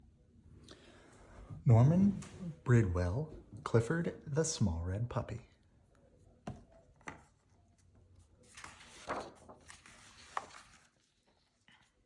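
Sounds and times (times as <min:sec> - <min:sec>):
soft knocks of book handling: 0:06.3 - 0:11.0
page turning rustle: 0:06.5 - 0:12.0.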